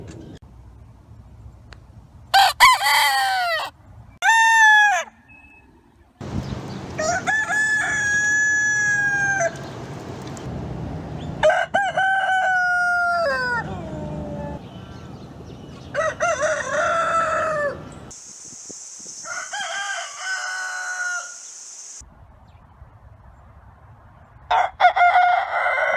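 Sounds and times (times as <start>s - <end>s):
rooster crowing: 2.4s - 5.2s, 7.0s - 9.6s, 11.4s - 14.6s, 15.9s - 17.9s, 19.2s - 21.5s, 24.5s - 25.9s
steady background hiss: 18.1s - 22.0s.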